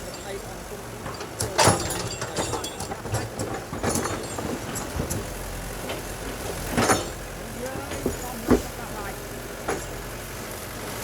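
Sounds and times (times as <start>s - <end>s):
metallic knocks and clanks: 0.0s - 8.8s
heavy machine engine running: 0.0s - 11.0s.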